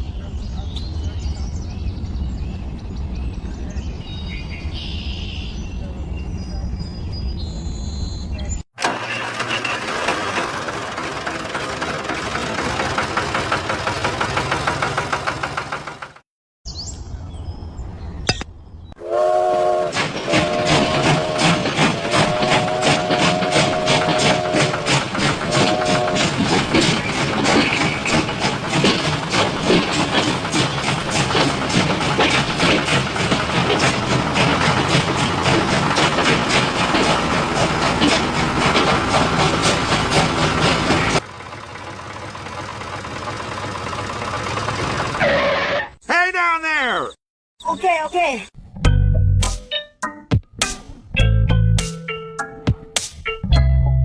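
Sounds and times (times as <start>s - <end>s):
engine rumble: 8.8s - 16.2s, 17.6s - 45.8s
steam train chuffing: 8.8s - 16.2s, 19.0s - 45.2s
steam train whistle: 19.0s - 26.6s.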